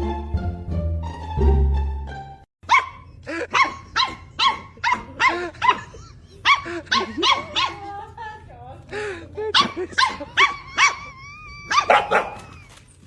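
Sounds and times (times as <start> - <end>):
plucked string music: 0.0 - 2.5
dog barking: 2.7 - 7.9, 9.5 - 11.0, 11.7 - 12.4.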